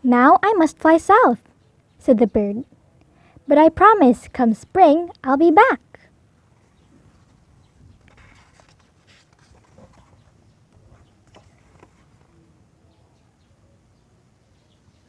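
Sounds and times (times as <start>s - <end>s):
paper rustling: 8.0s - 12.4s.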